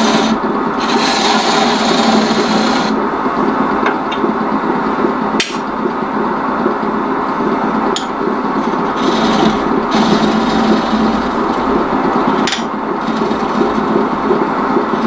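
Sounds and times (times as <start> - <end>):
wood lathe running: 0.0 - 3.0, 8.6 - 14.3.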